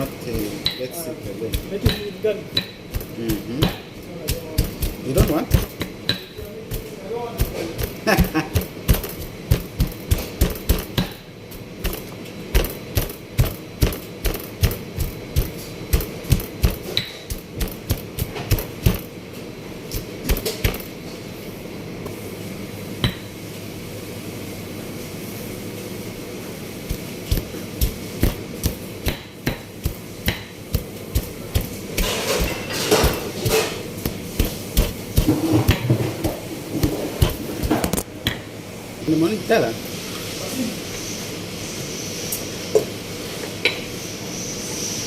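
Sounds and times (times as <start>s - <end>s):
rhythmic knocking blows: 0.7s - 19.1s, 26.9s - 37.9s.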